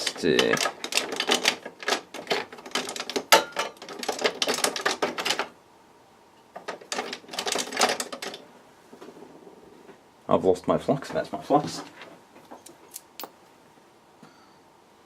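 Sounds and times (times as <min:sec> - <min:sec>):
tools clattering on workbench: 0:00.0 - 0:05.5.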